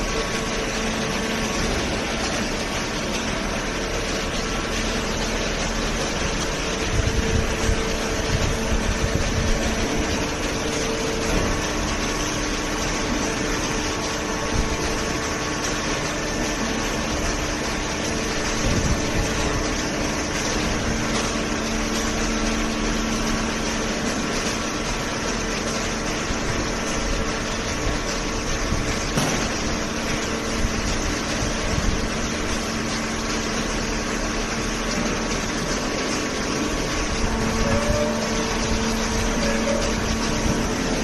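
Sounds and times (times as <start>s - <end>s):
hydraulic baler humming: 0.0s - 41.0s.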